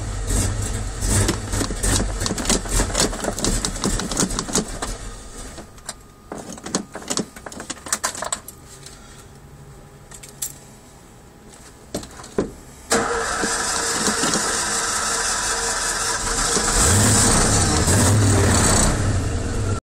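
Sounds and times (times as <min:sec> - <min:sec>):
car engine starting and running: 0:00.0 - 0:06.0, 0:12.9 - 0:19.8
clicks and rattles: 0:01.2 - 0:05.0, 0:05.8 - 0:08.6.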